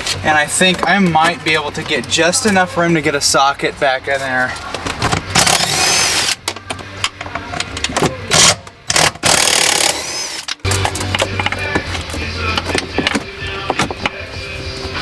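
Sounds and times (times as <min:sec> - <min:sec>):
music: 0:04.5 - 0:15.0
ratchet whirring and clicking: 0:05.4 - 0:06.4, 0:08.4 - 0:10.6.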